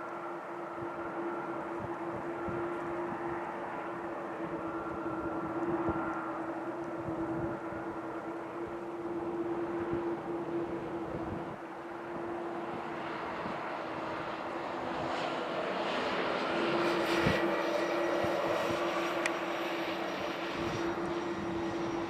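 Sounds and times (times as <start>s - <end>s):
jet engines humming: 0.0s - 22.0s.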